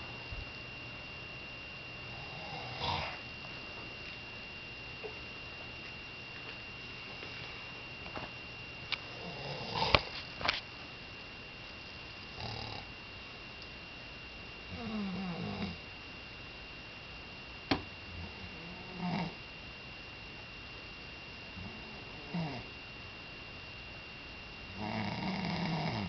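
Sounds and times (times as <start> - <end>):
faint high whine: 0.0 - 26.0
person snoring: 2.1 - 3.2, 9.2 - 10.1, 12.4 - 12.9, 14.7 - 15.8, 18.2 - 19.4, 21.6 - 22.7, 24.8 - 26.0.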